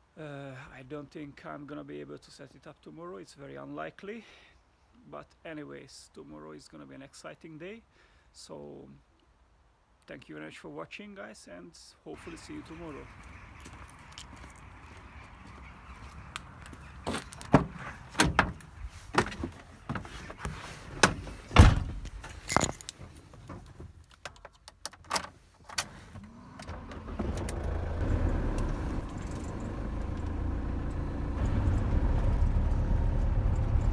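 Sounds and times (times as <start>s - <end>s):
vehicle engine rumbling: 12.2s - 23.3s, 26.0s - 33.9s
keys and door clicking: 16.6s - 18.8s, 21.0s - 23.0s, 24.1s - 25.9s.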